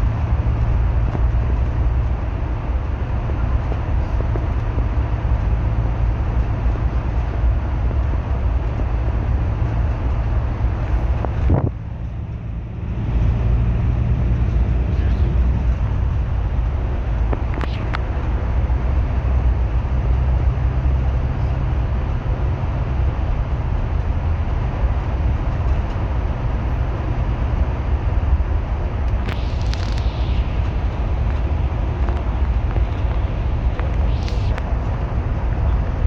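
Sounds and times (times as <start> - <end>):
bus engine and road rumble: 0.0 - 36.0
faint clicks: 29.1 - 35.0.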